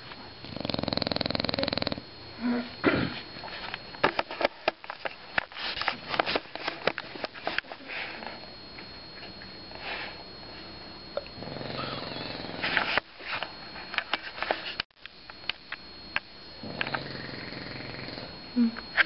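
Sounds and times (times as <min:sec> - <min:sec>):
dog snorting: 0:00.4 - 0:02.0
dog snoring: 0:00.4 - 0:03.2, 0:11.2 - 0:12.8, 0:16.6 - 0:18.4.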